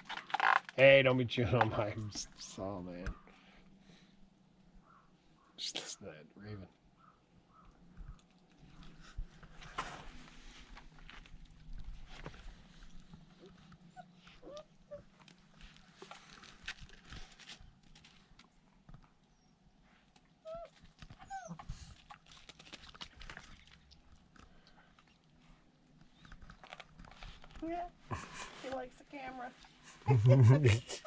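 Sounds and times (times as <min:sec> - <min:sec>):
puppies whining yips: 0:20.4 - 0:21.9.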